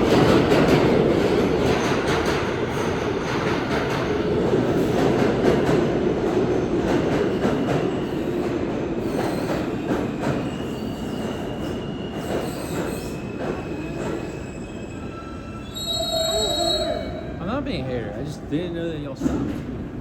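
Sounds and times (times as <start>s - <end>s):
subway train rumbling: 0.0s - 20.0s
metallic wheel squeal: 14.6s - 17.2s.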